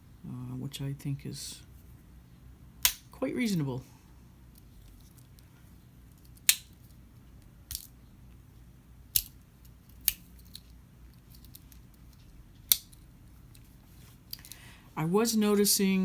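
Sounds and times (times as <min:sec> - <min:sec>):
pocket knife tools clicking: 0:09.2 - 0:10.6.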